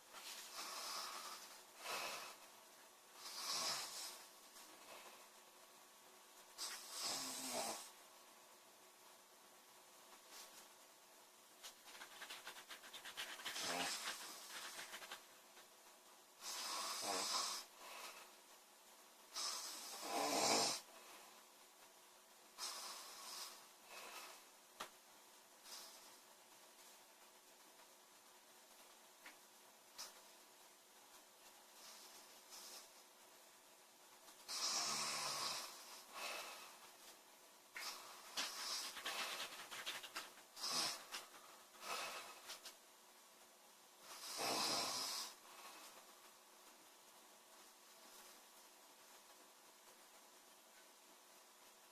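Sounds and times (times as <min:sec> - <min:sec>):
woman snoring: 0:03.2 - 0:04.2, 0:06.6 - 0:08.0, 0:16.4 - 0:18.2, 0:19.3 - 0:20.9, 0:34.5 - 0:36.7, 0:44.1 - 0:45.4.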